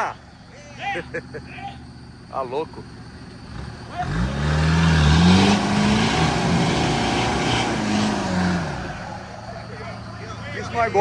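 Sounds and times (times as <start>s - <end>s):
engine revving hard: 3.5s - 9.4s.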